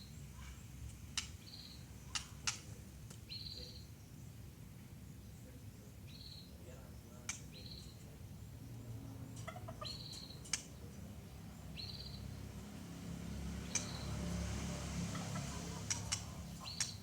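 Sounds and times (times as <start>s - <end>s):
sharp clicks: 13.7s - 13.9s, 15.8s - 17.0s.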